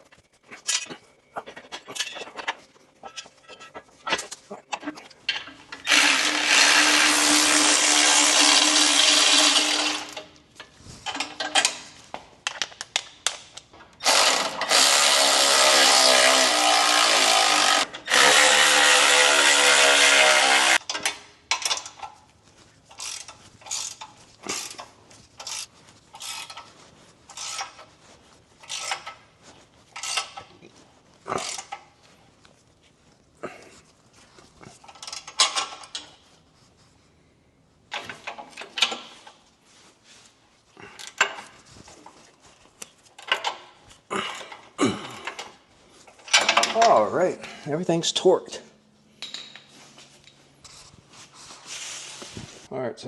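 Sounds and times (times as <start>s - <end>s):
cordless power tool running bolts: 5.7s - 10.3s, 14.0s - 21.2s.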